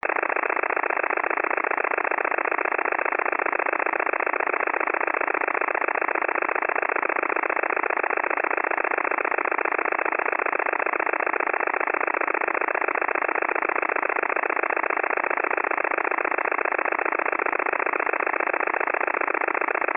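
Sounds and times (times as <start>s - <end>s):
rapid pulsing radio buzz: 0.0s - 19.9s.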